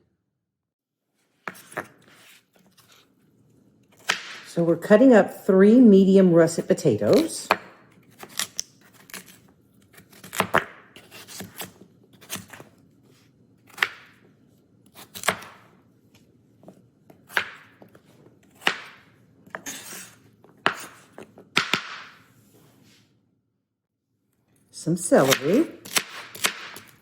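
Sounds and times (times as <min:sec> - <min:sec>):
knife cutting on a cutting board: 0:07.1 - 0:12.8, 0:14.9 - 0:15.7, 0:17.1 - 0:21.3, 0:25.2 - 0:27.0.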